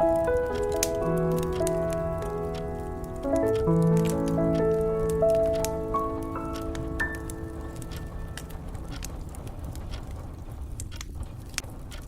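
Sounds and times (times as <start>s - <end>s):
wood fire crackling: 0.0s - 12.0s
low steady rumble: 4.6s - 12.0s.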